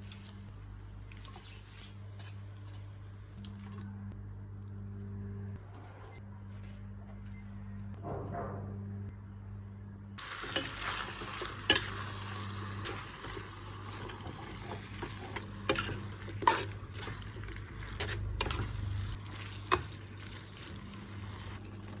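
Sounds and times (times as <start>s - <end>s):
noodles hissing in a pan: 10.2s - 18.2s.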